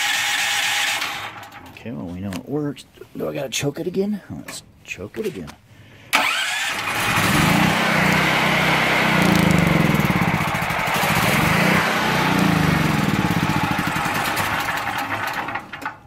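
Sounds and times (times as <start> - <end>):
generator electric starter: 0.0 - 1.8, 6.2 - 16.0
generator engine running: 6.2 - 16.0.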